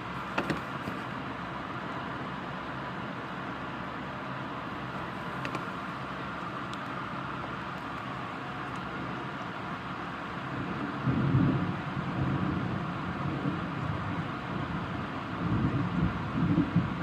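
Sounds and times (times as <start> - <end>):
steady rain: 0.0 - 17.0
thunder rumbling: 10.6 - 17.0.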